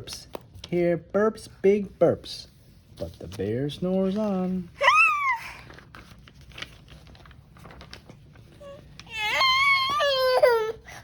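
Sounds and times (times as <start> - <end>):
small child crying: 8.6 - 11.0.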